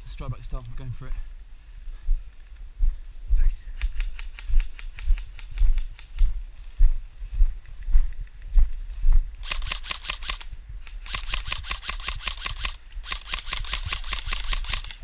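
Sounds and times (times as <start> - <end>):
airsoft guns firing full-auto: 9.4 - 10.4, 11.0 - 15.0.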